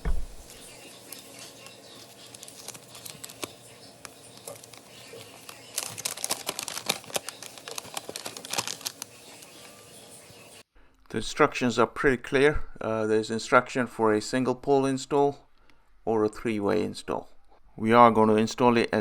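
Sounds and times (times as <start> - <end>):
packaging and paper crinkling: 0.4 - 10.4.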